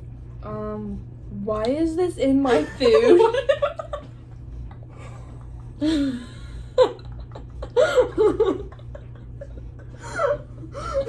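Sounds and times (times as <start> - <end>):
girls laughing: 2.6 - 4.1, 4.7 - 11.0.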